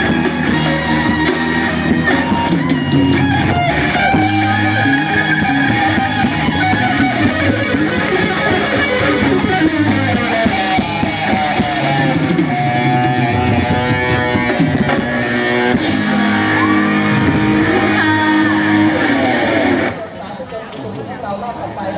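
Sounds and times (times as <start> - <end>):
drum kit: 0.0 - 19.9
bass guitar: 0.0 - 20.2
electric guitar: 0.0 - 20.3.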